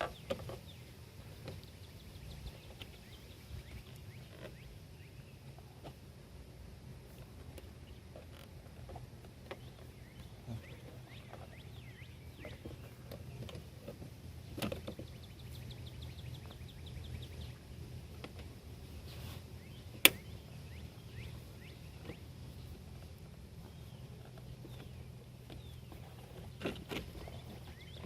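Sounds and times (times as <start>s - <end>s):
sharp click: 20.0s - 20.3s.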